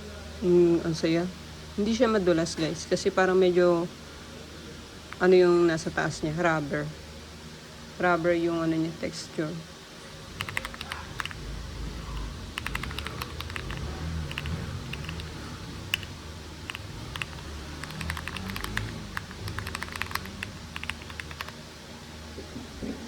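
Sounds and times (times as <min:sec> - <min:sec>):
mechanical keyboard key clacks: 0:10.4 - 0:11.5, 0:12.1 - 0:21.6.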